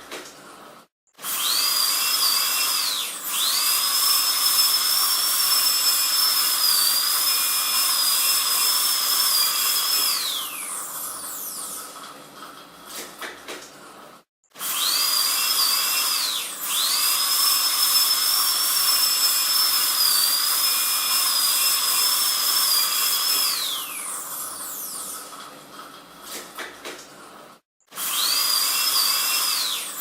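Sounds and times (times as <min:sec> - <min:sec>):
dentist's drill whining: 0:01.2 - 0:12.0, 0:14.6 - 0:25.6, 0:27.9 - 0:30.0.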